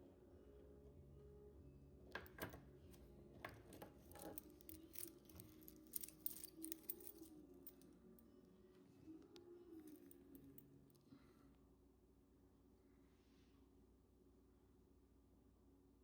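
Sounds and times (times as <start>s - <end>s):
faint clicks and rustles of handling: 2.2s - 11.3s.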